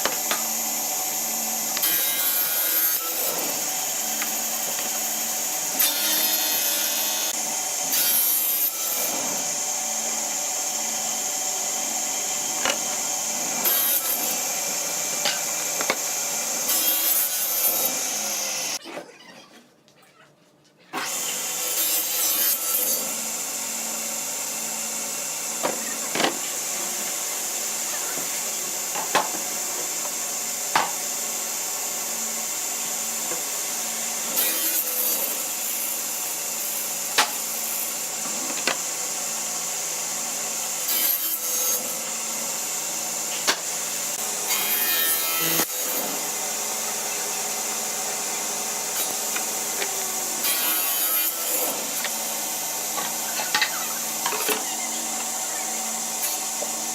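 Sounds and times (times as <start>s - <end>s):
woodworking machine running: 0.1s - 18.8s, 42.1s - 56.9s.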